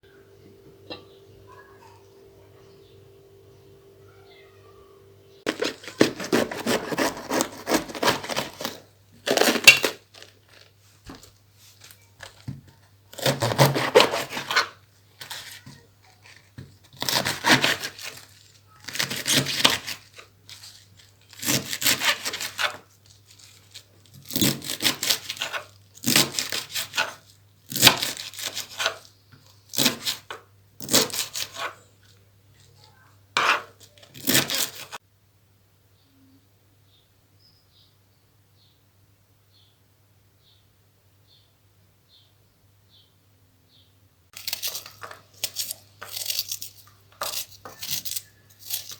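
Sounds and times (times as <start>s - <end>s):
cabbage crunching as cut: 5.5s - 31.9s, 33.4s - 35.0s, 44.4s - 48.9s.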